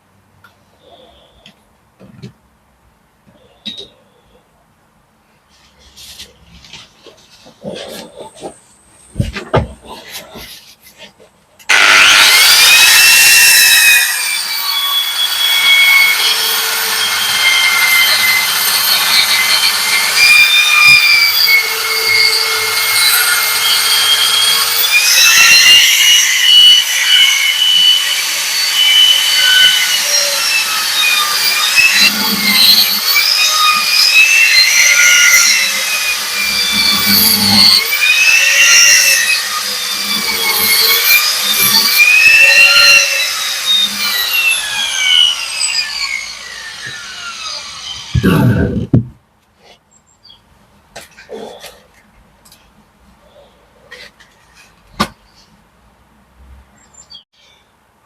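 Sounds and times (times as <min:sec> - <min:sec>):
power tool disc cutting mortar: 0:11.7 - 0:49.0.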